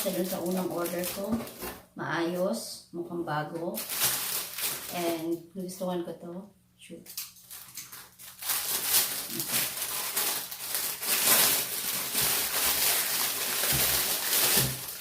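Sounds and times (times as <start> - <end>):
packaging rustling and crinkling: 0.0 - 1.9, 3.6 - 5.4, 7.2 - 15.0.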